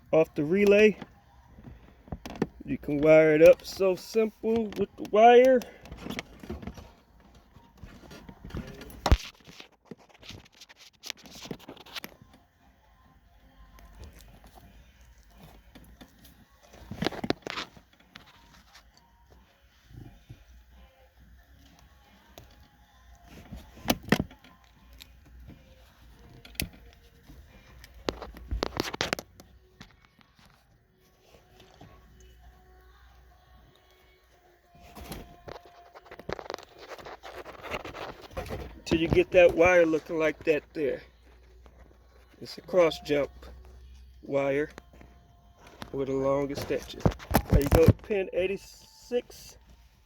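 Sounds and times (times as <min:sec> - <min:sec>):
handling small electrical parts: 0:34.8 - 0:49.7.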